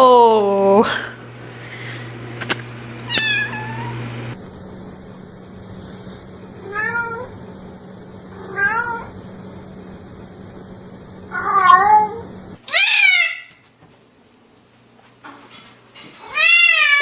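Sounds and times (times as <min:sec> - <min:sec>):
low background hum: 0:00.0 - 0:17.0
kittens meowing: 0:03.1 - 0:04.1, 0:16.3 - 0:17.0.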